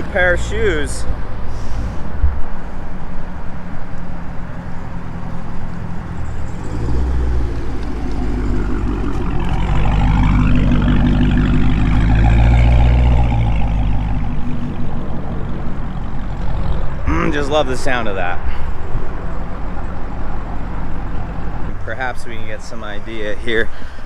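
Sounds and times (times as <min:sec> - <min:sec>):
car engine running: 0:02.4 - 0:21.9
rising whine: 0:06.0 - 0:17.0.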